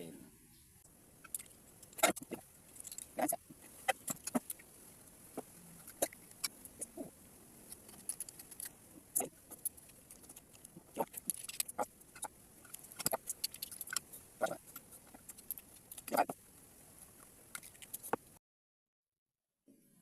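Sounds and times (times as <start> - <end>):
wet mouth clicks and chewing: 1.2 - 4.6, 5.8 - 7.1, 7.7 - 16.4, 17.5 - 18.2.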